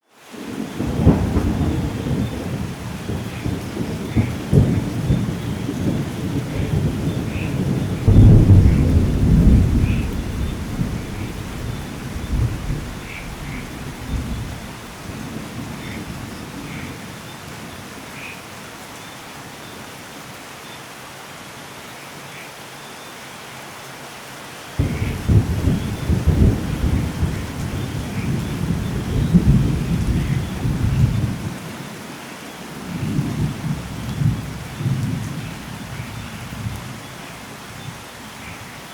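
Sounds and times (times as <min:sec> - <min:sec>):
light rain: 0:00.0 - 0:38.9
rolling thunder: 0:00.7 - 0:17.0, 0:24.8 - 0:31.6, 0:32.9 - 0:37.2.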